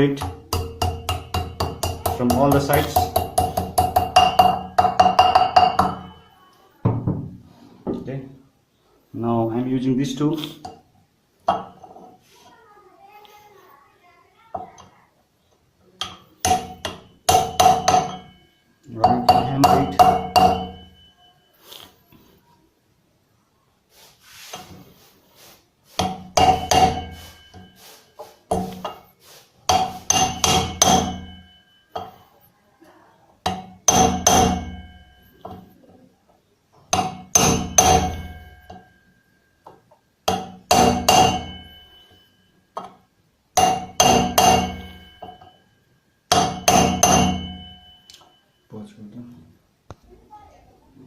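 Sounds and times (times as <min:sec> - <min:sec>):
hammer striking metal: 0:00.2 - 0:06.3, 0:16.0 - 0:18.4, 0:19.0 - 0:21.1, 0:26.0 - 0:29.0, 0:29.7 - 0:32.2, 0:33.4 - 0:35.7, 0:36.9 - 0:39.1, 0:39.7 - 0:43.0, 0:43.6 - 0:45.6, 0:46.3 - 0:48.4.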